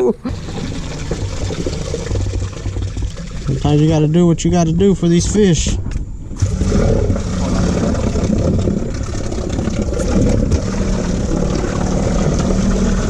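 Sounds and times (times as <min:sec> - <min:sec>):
motor humming: 0:00.0 - 0:13.0.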